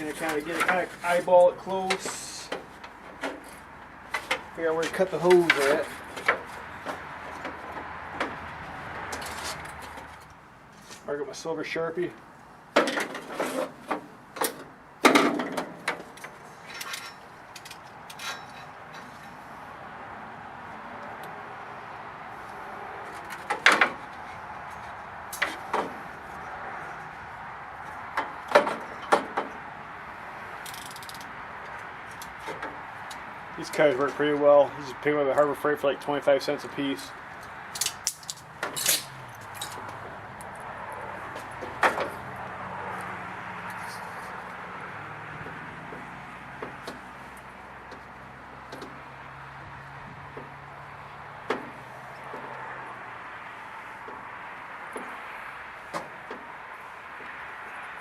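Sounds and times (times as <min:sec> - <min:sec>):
tools clicking and knocking: 0:30.6 - 0:33.2, 0:37.4 - 0:40.0.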